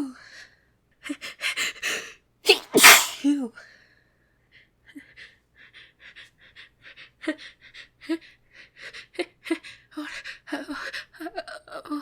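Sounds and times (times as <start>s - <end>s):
person gasping before a sneeze: 1.8s - 3.3s.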